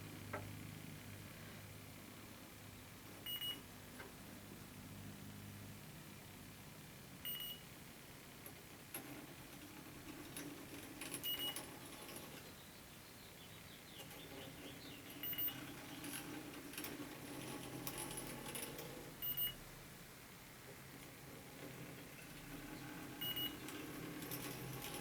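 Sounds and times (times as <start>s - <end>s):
short high beeps: 7.3s - 7.6s, 15.2s - 15.6s, 19.2s - 19.6s, 23.2s - 23.6s
handling clicks and rattles: 21.0s - 25.0s.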